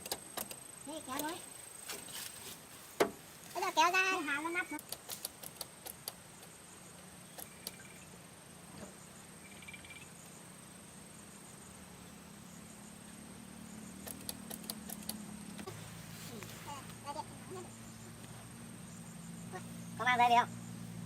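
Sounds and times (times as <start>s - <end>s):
sharp clicks: 0.0s - 1.3s, 4.8s - 6.6s, 7.3s - 8.0s, 13.9s - 15.7s
high insect drone: 0.0s - 21.0s.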